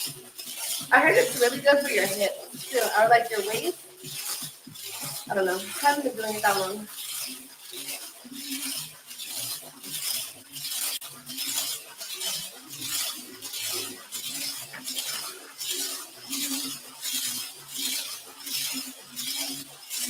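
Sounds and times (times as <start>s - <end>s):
rhythmic swishing: 0.0s - 20.0s.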